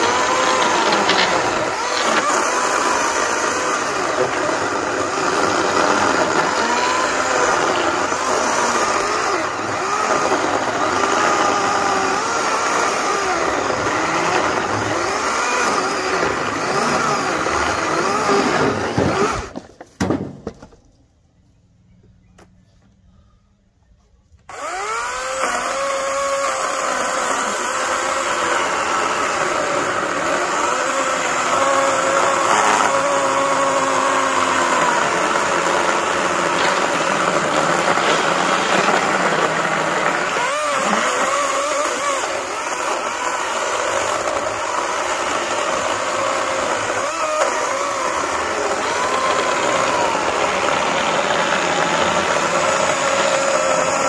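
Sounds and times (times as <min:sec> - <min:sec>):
electric chainsaw cutting wood: 0:00.0 - 0:19.7, 0:24.5 - 0:54.0.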